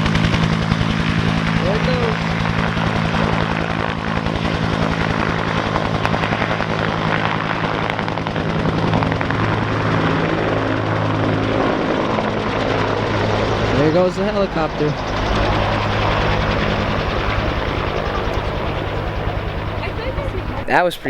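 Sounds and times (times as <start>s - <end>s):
helicopter engine tone: 0.0s - 21.0s
helicopter rotor blades beating: 0.0s - 21.0s
rotor wash noise: 12.2s - 21.0s.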